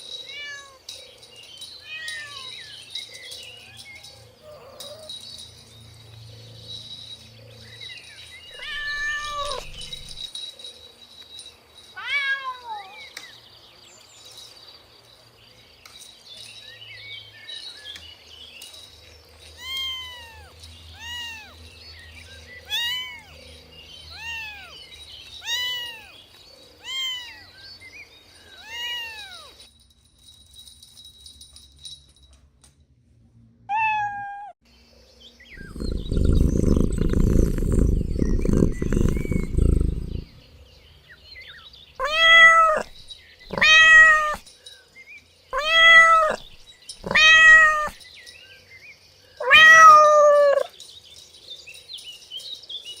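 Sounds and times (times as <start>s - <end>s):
kitten meowing: 8.6s - 10.2s, 42.0s - 44.4s, 45.6s - 48.0s, 49.4s - 50.7s.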